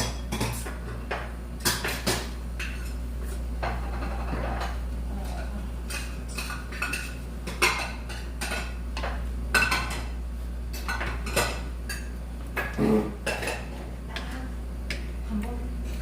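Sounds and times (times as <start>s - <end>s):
cutlery clinking against dishes: 0.0s - 3.0s, 5.9s - 10.1s, 10.7s - 13.8s
steady low hum: 0.0s - 16.0s.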